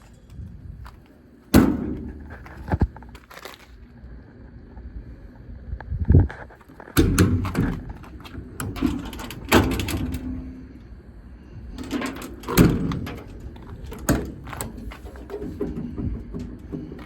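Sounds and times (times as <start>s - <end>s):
metal doors clunking shut: 1.5s - 2.8s, 6.7s - 17.0s
metal latches rattling: 6.7s - 11.0s, 11.6s - 17.0s.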